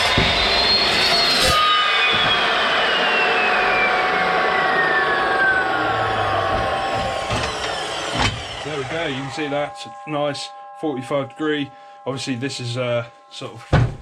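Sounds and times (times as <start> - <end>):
chop saw cutting steel: 0.0 - 9.9
saw motor winding down whine: 0.0 - 13.5.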